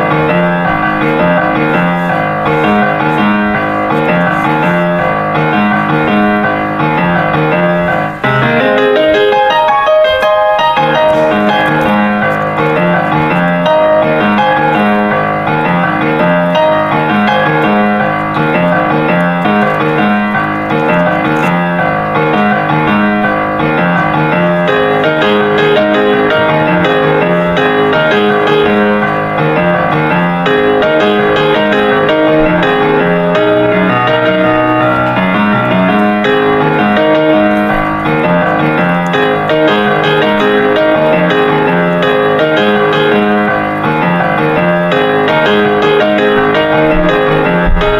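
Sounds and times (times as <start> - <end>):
piano music with repeating bass: 0.0 - 47.9.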